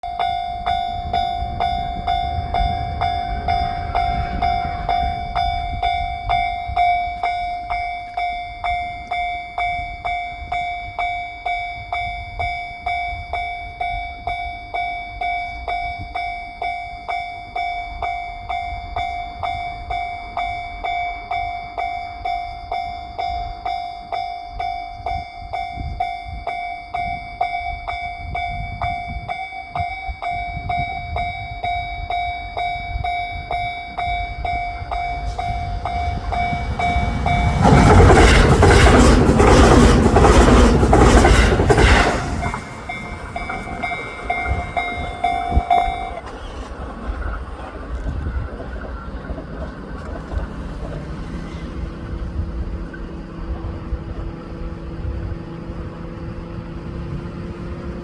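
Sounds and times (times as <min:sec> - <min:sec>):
low rumble: 0:01.3 - 0:07.3, 0:32.8 - 0:51.0
level crossing bell ringing: 0:26.2 - 0:37.7, 0:42.4 - 0:46.6.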